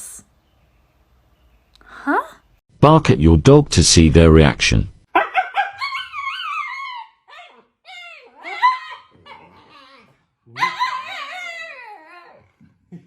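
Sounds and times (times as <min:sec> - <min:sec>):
dog calling: 0:05.1 - 0:11.8.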